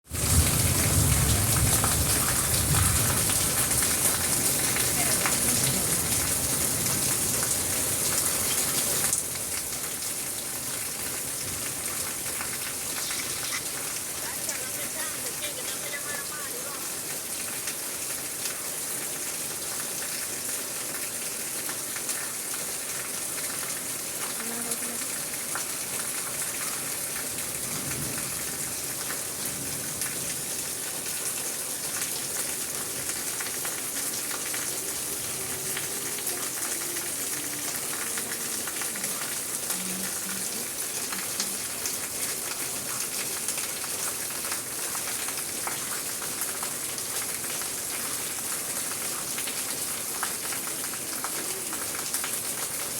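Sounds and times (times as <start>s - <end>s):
steady rain falling: 0.0s - 52.9s.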